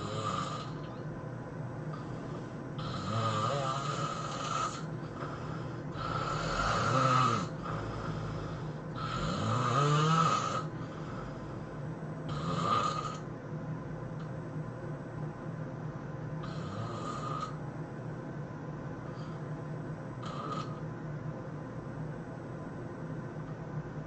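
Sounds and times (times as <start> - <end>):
man snoring: 0.0 - 1.0, 2.0 - 11.5, 12.3 - 13.2, 16.4 - 17.6, 20.2 - 20.8.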